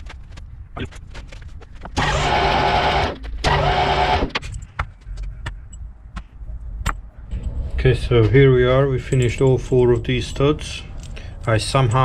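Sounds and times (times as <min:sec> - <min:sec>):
workshop machine motor: 0:02.0 - 0:04.4.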